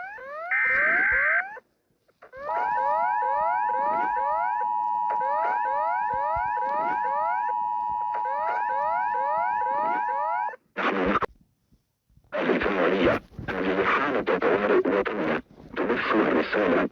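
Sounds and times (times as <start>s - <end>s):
rising siren sweep: 2.3s - 10.6s
steady two-note alarm tone: 2.5s - 10.5s.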